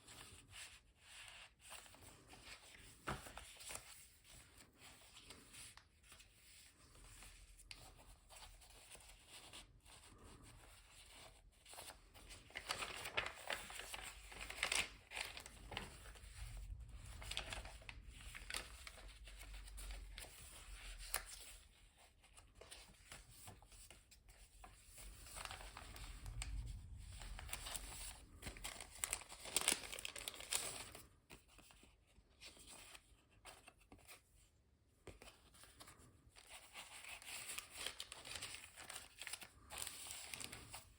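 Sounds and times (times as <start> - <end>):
paper pages rustling: 1.1 - 34.2, 35.0 - 40.9.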